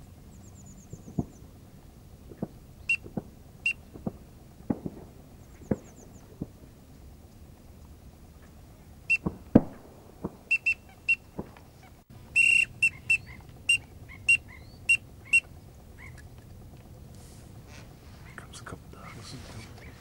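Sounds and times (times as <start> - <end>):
duck whistle call toots: 10.5 - 11.3, 12.4 - 15.5.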